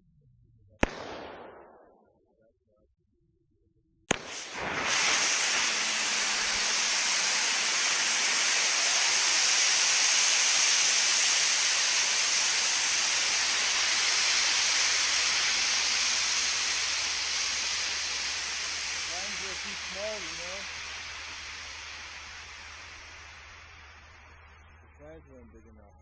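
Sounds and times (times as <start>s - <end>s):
gas hissing from tank: 4.1s - 24.8s.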